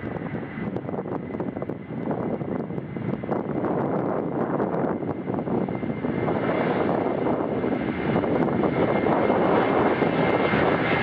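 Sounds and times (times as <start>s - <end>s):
airliner cabin engine rush: 0.0s - 11.0s.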